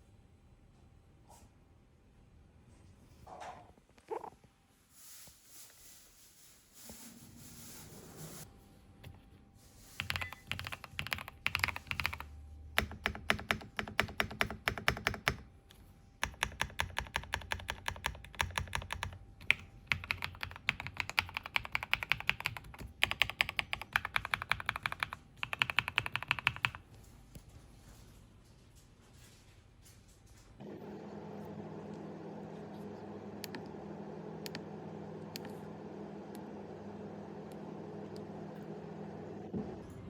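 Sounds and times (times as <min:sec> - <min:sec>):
mechanical keyboard typing: 0:10.0 - 0:15.5, 0:16.2 - 0:26.8.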